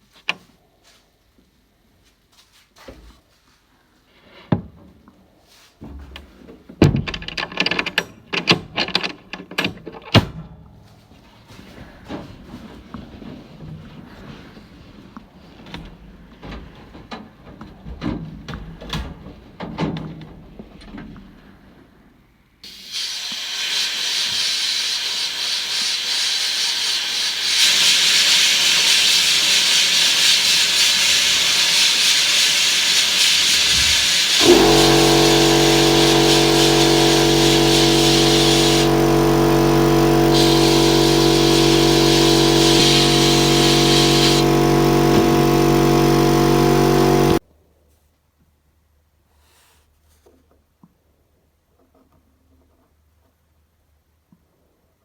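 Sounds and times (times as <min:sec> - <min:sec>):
loud steady hiss: 0:22.6 - 0:47.4
electric motor humming: 0:26.4 - 0:47.4.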